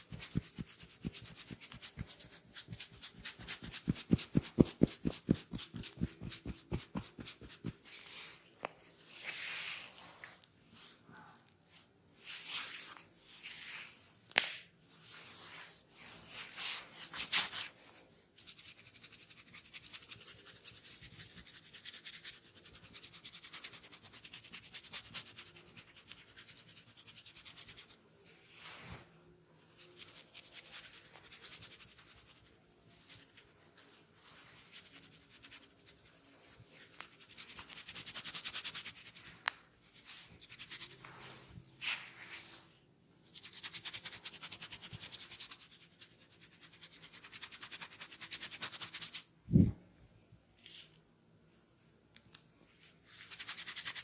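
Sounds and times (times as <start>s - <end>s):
fingers scratching scalp: 0.0s - 8.2s.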